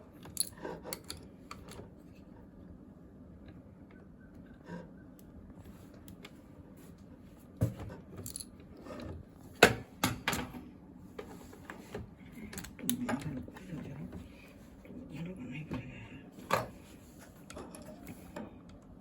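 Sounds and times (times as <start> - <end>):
small parts clicking and clinking: 0.2 - 1.8, 8.2 - 8.6.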